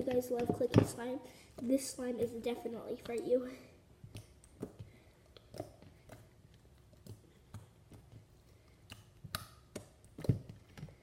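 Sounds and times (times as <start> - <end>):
slime wet clicks and pops: 8.8 - 10.3.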